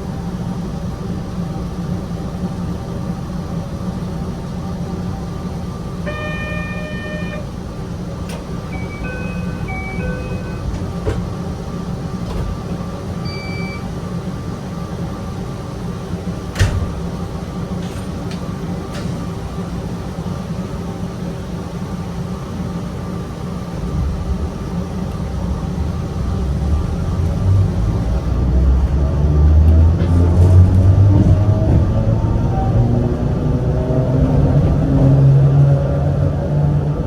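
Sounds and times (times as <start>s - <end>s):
electric train hum: 0.0s - 37.0s
train motors rumbling: 0.0s - 37.0s
short electronic beeps: 6.1s - 7.5s, 8.7s - 10.8s, 13.2s - 13.9s.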